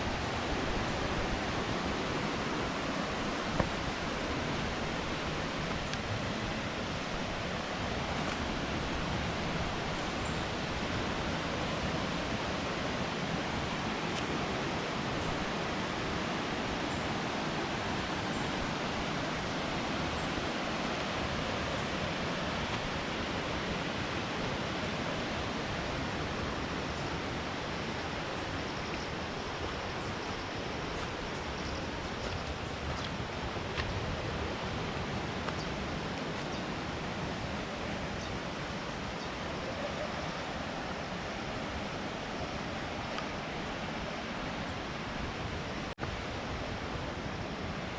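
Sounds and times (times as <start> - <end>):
waterfall rushing: 0.0 - 47.9.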